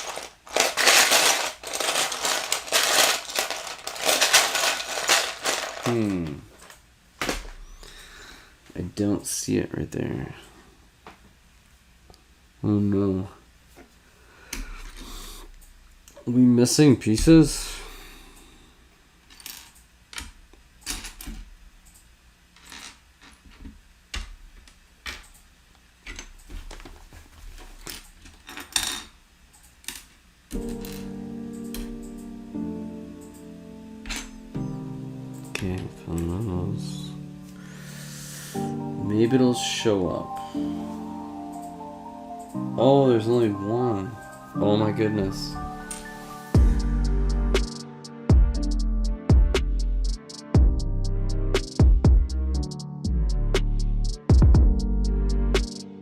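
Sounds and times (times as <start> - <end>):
plastic blocks clicking and rattling: 0.0 - 6.8
plastic building pieces clattering: 0.0 - 6.8
person humming: 5.8 - 6.5.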